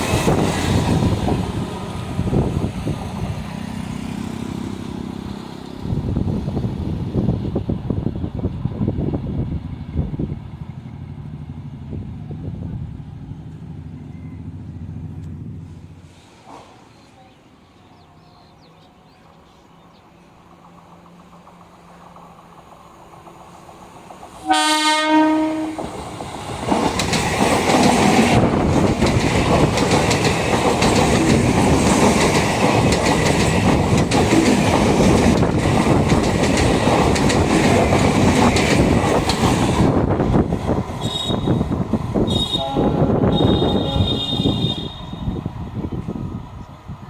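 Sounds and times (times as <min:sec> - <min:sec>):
train rumbling past: 0:00.0 - 0:47.0
locomotive horn blast: 0:24.4 - 0:25.9, 0:41.0 - 0:45.4
wheels clacking over rail joints: 0:25.8 - 0:42.6.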